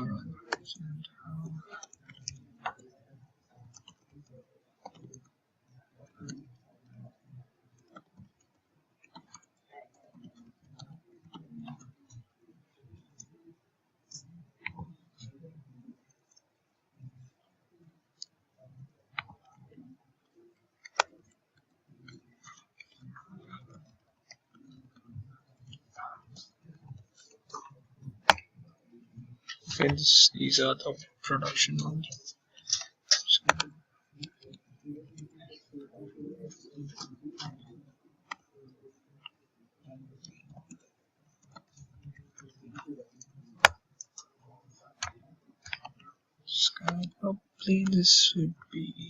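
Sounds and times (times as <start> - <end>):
faint low murmuring: 0.0 - 1.8
keyboard and mouse clicks: 0.0 - 5.4, 6.0 - 12.3, 19.1 - 28.6, 31.7 - 39.4, 41.4 - 47.2.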